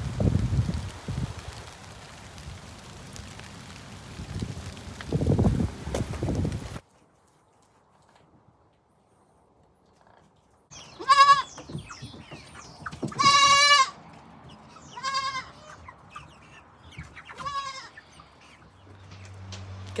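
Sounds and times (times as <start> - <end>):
goat bleating: 10.9 - 11.5, 13.1 - 14.0, 14.9 - 15.8, 17.3 - 18.0.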